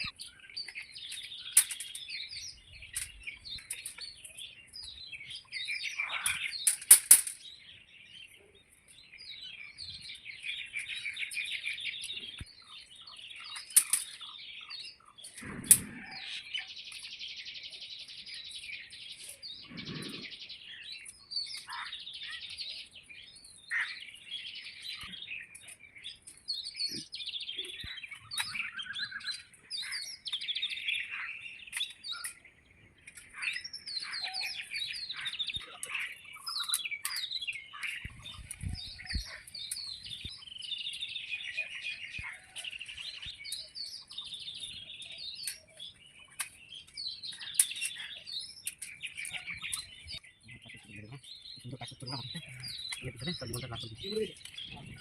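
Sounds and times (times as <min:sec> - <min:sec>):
small birds chirping: 0:00.0 - 0:55.0
sharp clicks: 0:15.2 - 0:16.1.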